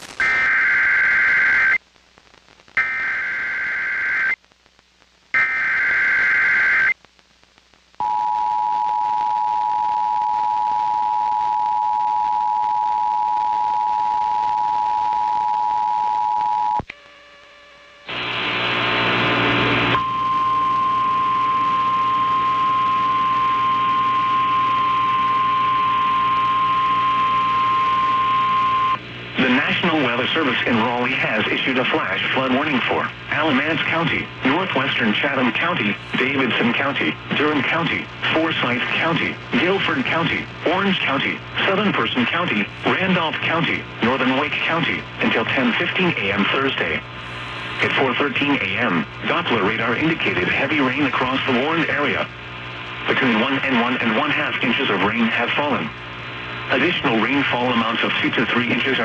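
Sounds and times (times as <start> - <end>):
faint hum: 0.0 - 59.0
noisy audio burst: 0.0 - 59.0
steady warning tone: 19.8 - 29.6.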